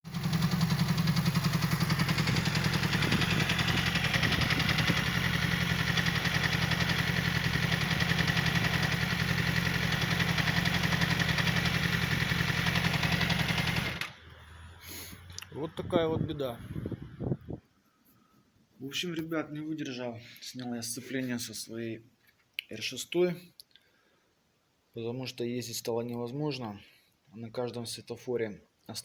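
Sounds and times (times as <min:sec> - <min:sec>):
motorcycle engine idling: 0:00.1 - 0:17.4.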